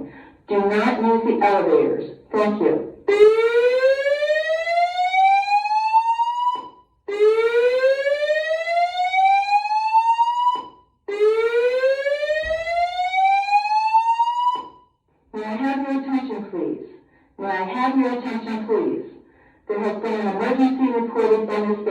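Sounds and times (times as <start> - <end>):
fire alarm whoop tone: 3.1 - 14.9.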